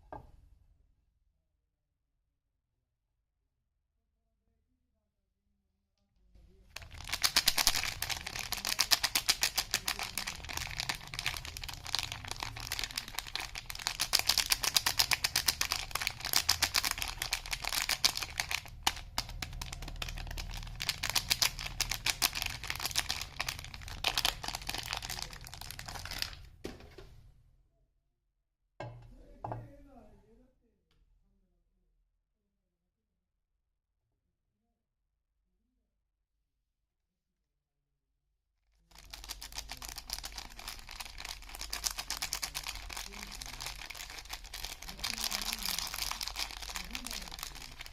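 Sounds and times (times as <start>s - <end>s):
packaging crinkling: 6.8s - 26.5s, 38.9s - 47.9s.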